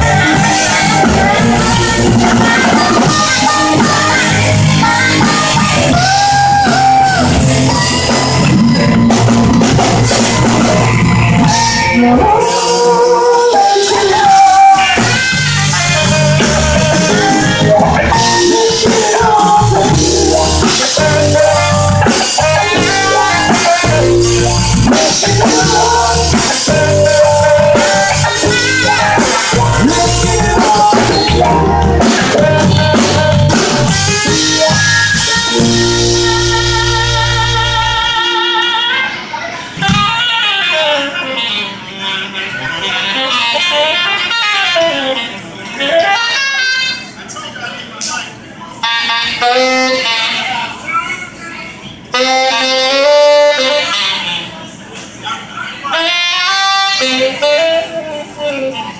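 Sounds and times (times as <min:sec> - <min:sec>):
sung held notes: 0:00.0 - 0:39.4
band music with drums and guitar: 0:00.0 - 0:41.9, 0:42.5 - 0:47.2, 0:48.3 - 0:55.2, 0:55.9 - 0:58.9.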